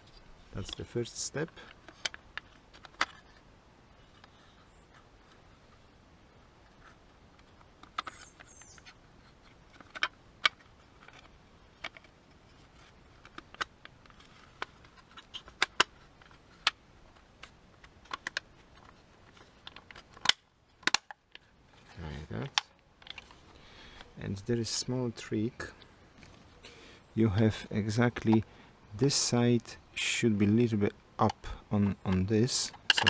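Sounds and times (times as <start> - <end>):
small parts clicking and tapping: 31.2 - 33.0.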